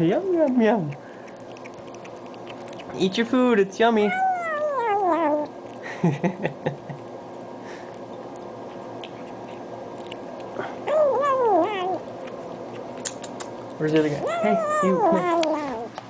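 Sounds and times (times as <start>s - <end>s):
cat grunting calls: 4.1s - 5.5s, 10.6s - 12.0s, 14.2s - 15.9s
cat yowling: 4.1s - 5.5s, 10.8s - 12.1s, 14.2s - 15.9s.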